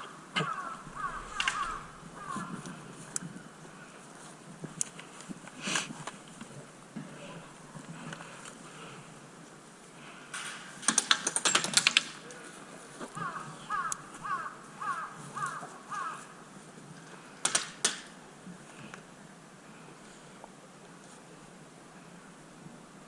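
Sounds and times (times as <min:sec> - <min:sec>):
bird calling: 0:00.0 - 0:04.0, 0:13.2 - 0:16.4
airsoft guns firing: 0:17.4 - 0:18.1.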